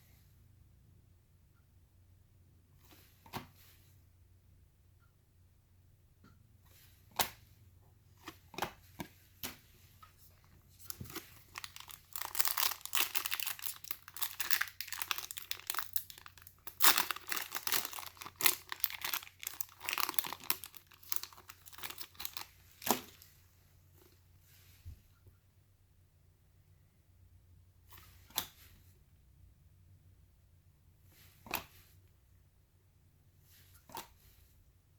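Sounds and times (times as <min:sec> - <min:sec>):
foil wrapper tearing and crinkling: 0:10.9 - 0:23.2.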